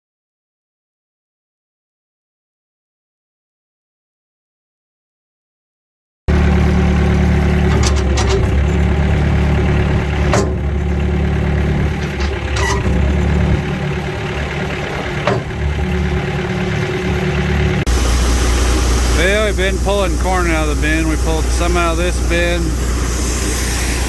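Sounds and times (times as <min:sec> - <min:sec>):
engine running loudly: 0:06.3 - 0:24.0
sharp clicks or knocks: 0:14.5 - 0:17.8.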